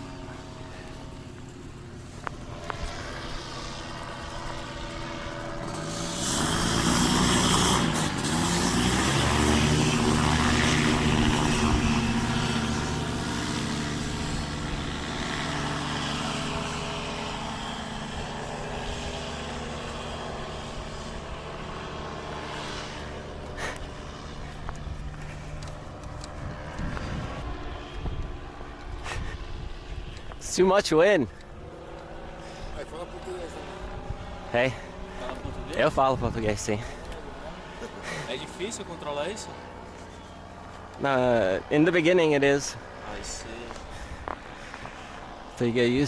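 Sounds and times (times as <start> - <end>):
paramotor engine and propeller: 0.0 - 46.0.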